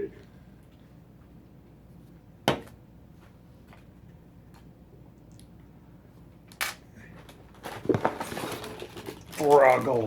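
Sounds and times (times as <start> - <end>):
cards rustling: 7.2 - 10.0.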